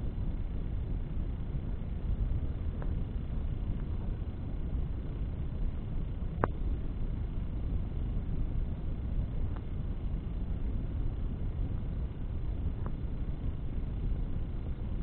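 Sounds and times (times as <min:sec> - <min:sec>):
low rumble of fire: 0:00.0 - 0:15.0.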